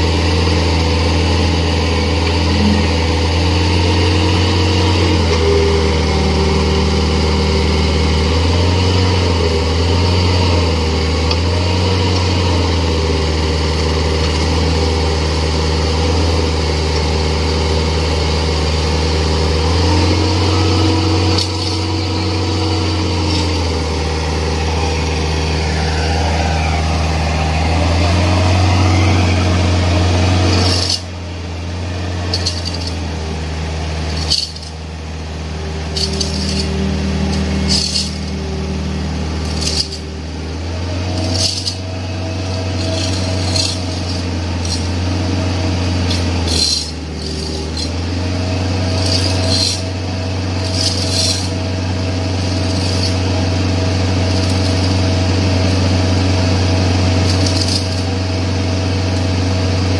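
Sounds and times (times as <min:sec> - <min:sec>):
excavator engine running: 0:00.0 - 0:59.9
sharp metallic clinks: 0:32.0 - 0:33.1, 0:34.1 - 0:34.8, 0:35.9 - 0:38.5, 0:39.4 - 0:40.1, 0:41.1 - 0:45.0, 0:45.8 - 0:48.1, 0:48.8 - 0:50.0, 0:50.6 - 0:51.8, 0:52.4 - 0:53.3, 0:57.2 - 0:58.2.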